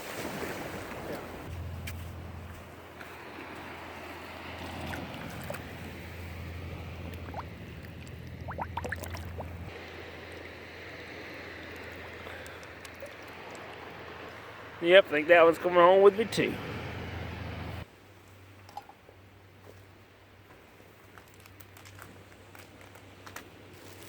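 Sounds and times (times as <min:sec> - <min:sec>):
small waves washing on beach: 0:00.0 - 0:17.9.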